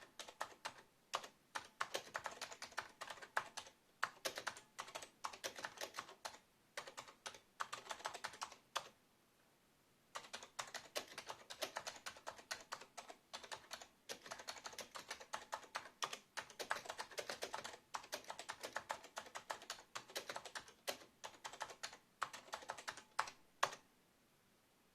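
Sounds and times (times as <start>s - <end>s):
fast keyboard typing: 0.0s - 8.9s, 10.2s - 23.8s.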